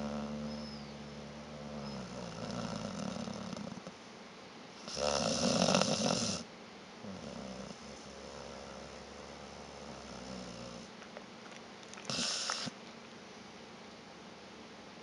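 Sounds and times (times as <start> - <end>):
dog snoring: 0.0 - 4.0, 4.8 - 10.9, 12.0 - 12.8.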